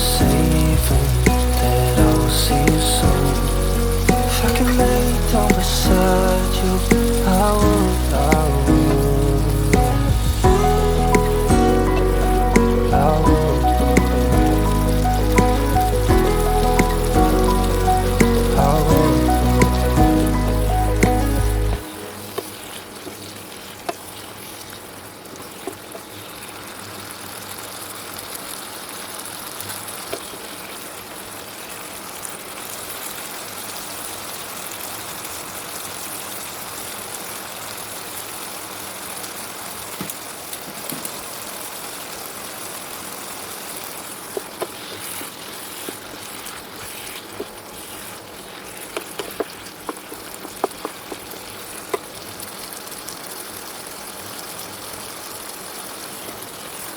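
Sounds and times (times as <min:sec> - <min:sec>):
food sizzling in a pan: 0:00.0 - 0:56.9.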